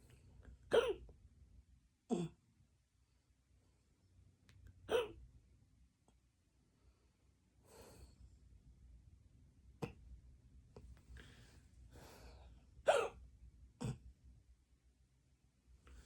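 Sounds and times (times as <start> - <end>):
person hiccuping: 0.7 - 1.1, 2.1 - 2.4, 4.9 - 5.2, 9.8 - 10.0, 12.9 - 13.2, 13.8 - 14.1
person breathing: 6.9 - 8.3, 11.1 - 12.6.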